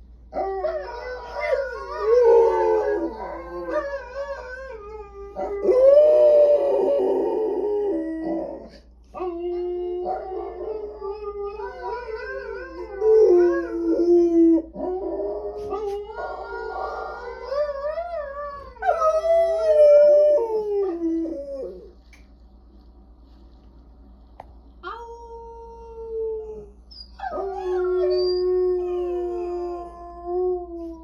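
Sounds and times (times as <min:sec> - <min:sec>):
dog howling: 0:00.3 - 0:22.0, 0:24.8 - 0:31.0.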